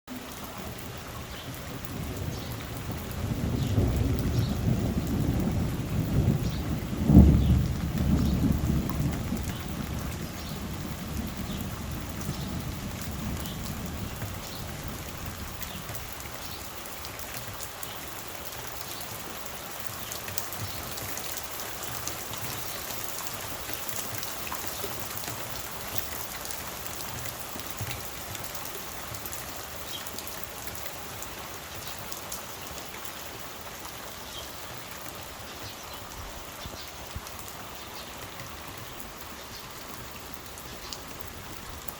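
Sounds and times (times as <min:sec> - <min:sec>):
steady rain: 0:00.1 - 0:41.9
thunder rumbling: 0:01.5 - 0:16.1.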